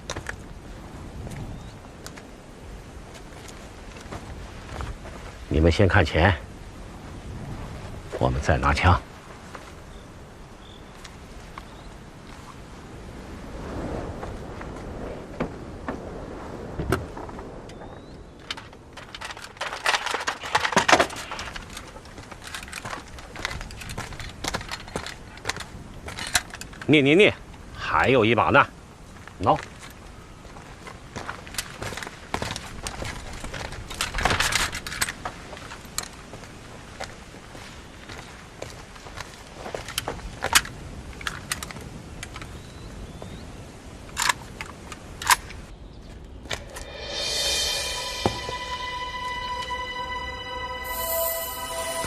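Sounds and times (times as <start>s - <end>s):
objects clicking and rustling: 18.4s - 26.9s.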